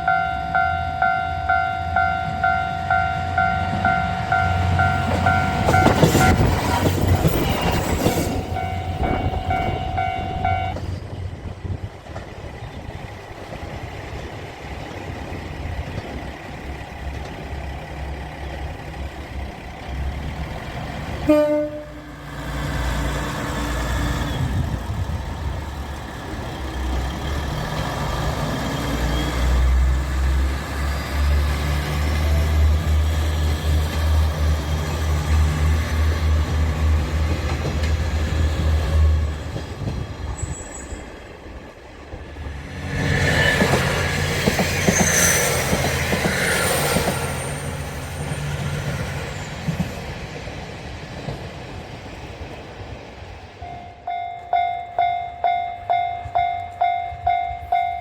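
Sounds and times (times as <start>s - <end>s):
diesel railcars running past: 0.0s - 58.0s
train horn blast: 8.6s - 10.8s, 21.2s - 22.2s.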